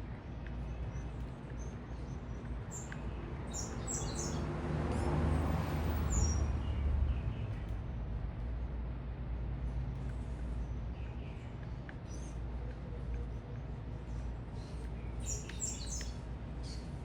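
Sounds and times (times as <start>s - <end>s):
small birds chirping: 0.0s - 7.8s, 8.8s - 17.0s
vehicle passing: 3.3s - 8.8s.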